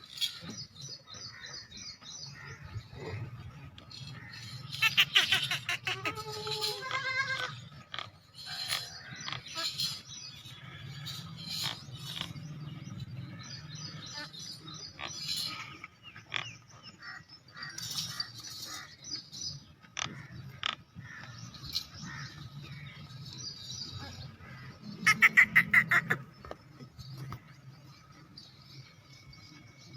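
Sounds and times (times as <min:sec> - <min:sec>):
goats bleating: 0:06.0 - 0:07.6.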